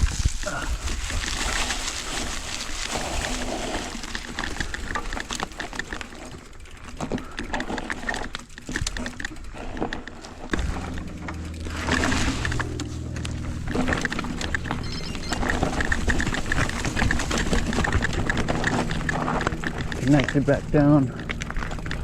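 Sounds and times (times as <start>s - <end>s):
footsteps crunching on gravel: 0.0s - 4.8s, 10.4s - 22.0s
brush rustling: 0.0s - 6.3s, 10.2s - 22.0s
low hum: 9.4s - 22.0s.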